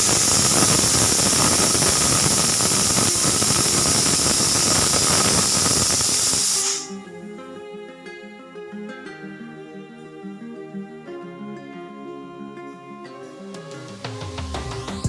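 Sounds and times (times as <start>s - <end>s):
pressure cooker steam hissing: 0.0s - 6.9s
soft plucked instrumental music: 6.8s - 15.0s.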